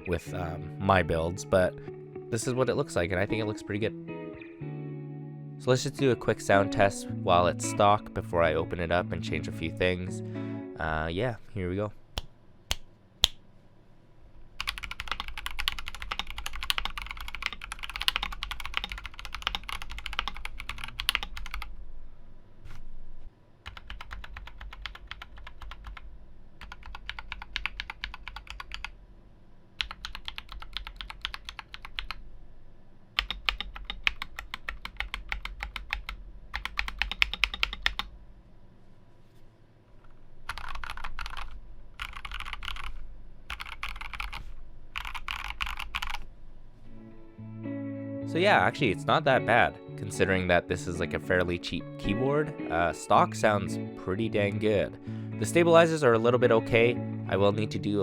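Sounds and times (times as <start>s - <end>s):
mechanical keyboard key clacks: 33.2s - 38.0s.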